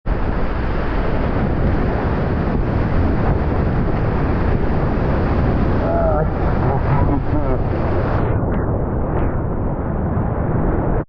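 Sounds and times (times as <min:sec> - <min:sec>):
whitewater rapids rushing: 0:00.1 - 0:08.2.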